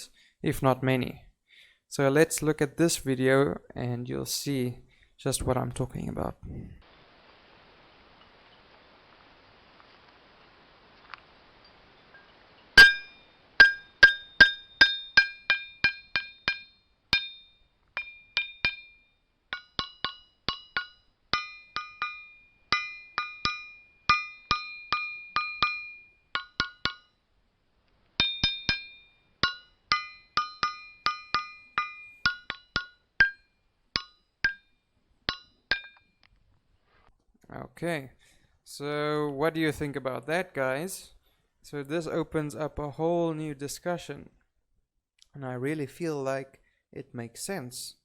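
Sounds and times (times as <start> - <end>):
ringing rocks struck: 11.6 - 27.1, 28.2 - 34.7, 35.3 - 36.1.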